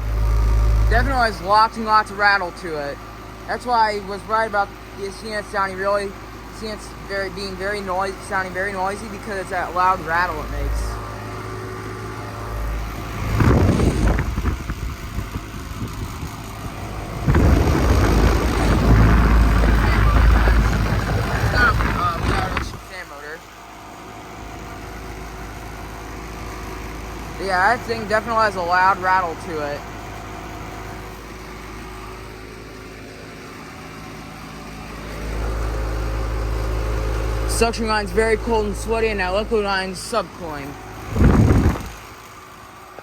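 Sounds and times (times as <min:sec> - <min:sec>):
loud rattle from unit: 0:00.0 - 0:43.0
air conditioner humming: 0:00.8 - 0:43.0
loud rattle: 0:08.5 - 0:23.1, 0:40.4 - 0:42.8.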